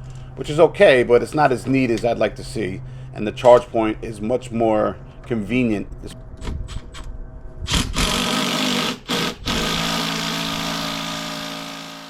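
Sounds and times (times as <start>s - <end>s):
power tool motor humming: 7.7s - 12.0s.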